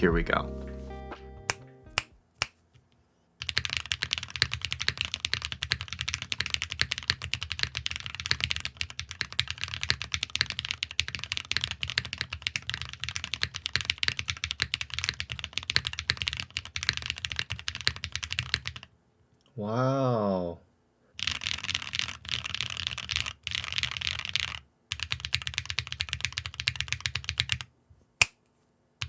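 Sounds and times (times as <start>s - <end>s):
fast typing on mechanical keyboard: 3.4s - 18.9s, 21.2s - 27.7s.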